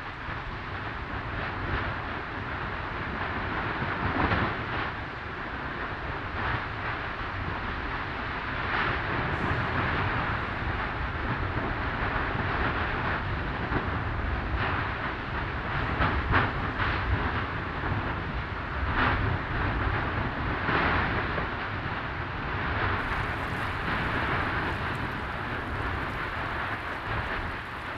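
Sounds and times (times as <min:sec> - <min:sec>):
volcano rumbling: 0:00.1 - 0:21.2, 0:21.9 - 0:27.9
lava gushing: 0:09.0 - 0:14.2, 0:23.0 - 0:27.9.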